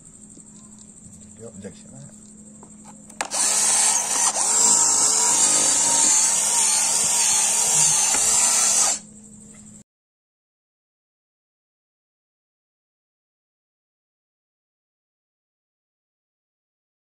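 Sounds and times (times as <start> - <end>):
small electric motor whining: 3.1 - 9.1.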